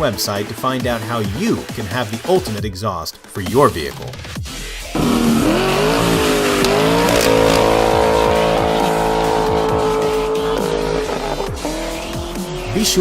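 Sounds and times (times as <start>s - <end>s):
music: 0.0s - 13.0s
car engine revving: 4.5s - 13.0s.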